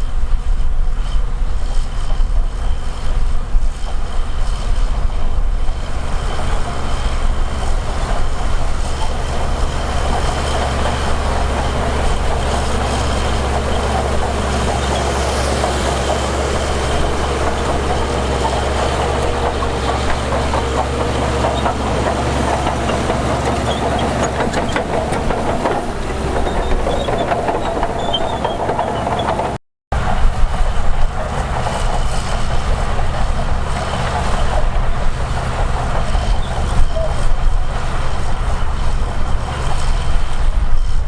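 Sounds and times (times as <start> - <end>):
diesel engine droning: 0.0 - 41.0.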